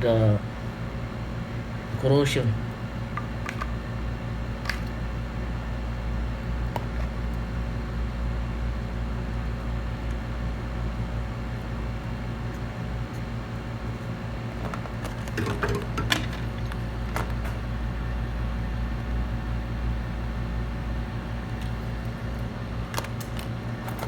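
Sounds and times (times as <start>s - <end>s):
electric blower humming: 10.8s - 18.1s.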